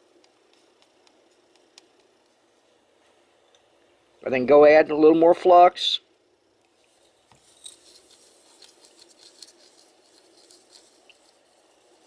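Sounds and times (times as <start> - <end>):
small ticks: 0.2 - 2.4, 7.6 - 12.0.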